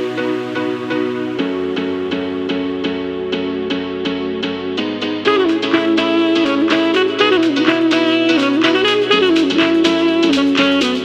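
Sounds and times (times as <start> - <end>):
soft musical accompaniment: 0.0 - 11.0
saxophone-like wind melody: 5.2 - 11.0.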